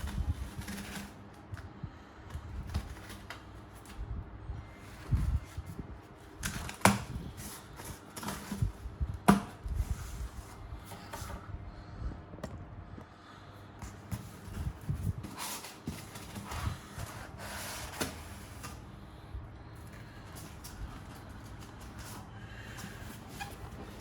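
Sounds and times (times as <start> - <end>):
packaging bumps and rustles: 13.8 - 18.8.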